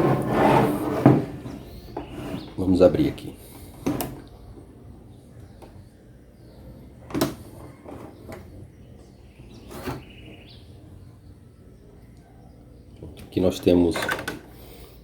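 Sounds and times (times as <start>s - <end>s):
faint rubbing: 0.0s - 2.9s.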